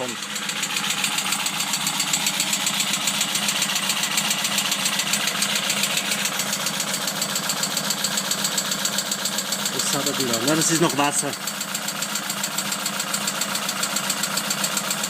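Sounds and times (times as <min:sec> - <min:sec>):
car engine idling: 0:00.0 - 0:15.0
rapid ticking engine knock: 0:00.0 - 0:15.0.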